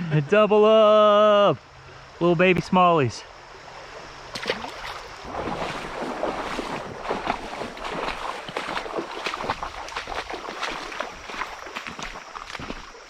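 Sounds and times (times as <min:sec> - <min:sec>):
river water splashing: 0:03.3 - 0:13.0.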